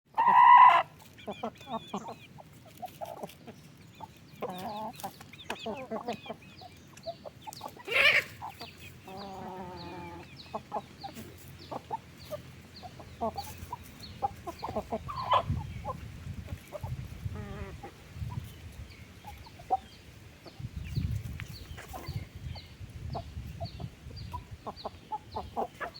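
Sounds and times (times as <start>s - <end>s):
chicken squawk: 0.1s - 2.2s, 7.6s - 16.0s
chickens clucking and calling: 0.1s - 25.9s.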